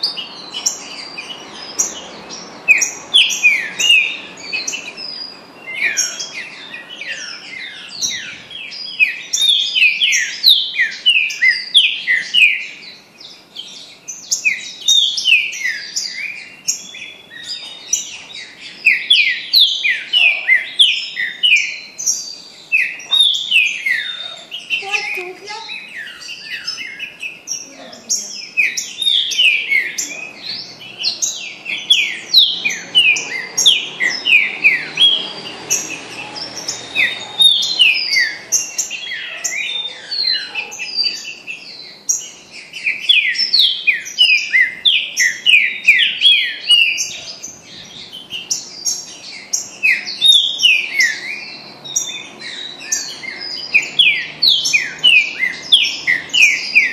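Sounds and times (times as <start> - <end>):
bird singing whistled notes: 0.0 - 56.9.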